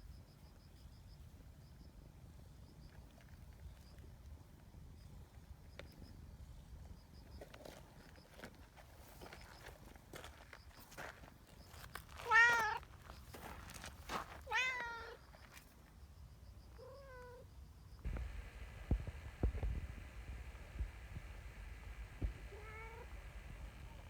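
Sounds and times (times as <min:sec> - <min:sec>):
cat meowing: 0:12.2 - 0:12.8, 0:14.4 - 0:15.2, 0:16.8 - 0:17.4, 0:22.5 - 0:23.1.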